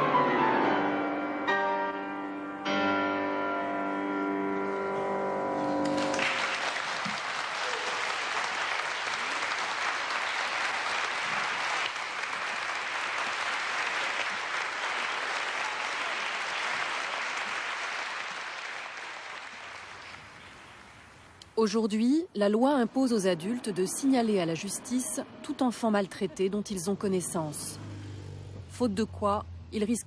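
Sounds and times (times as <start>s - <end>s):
piano chord: 0.0s - 6.6s
audience applauding: 5.8s - 21.0s.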